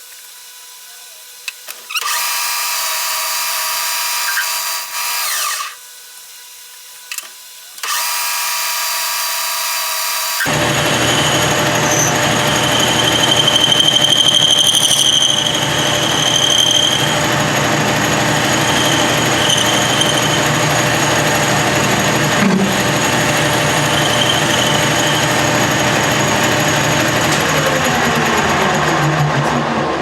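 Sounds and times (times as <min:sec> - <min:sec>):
milling machine cutting metal: 0:01.9 - 0:05.8, 0:07.8 - 0:29.8
high whine: 0:10.5 - 0:30.0.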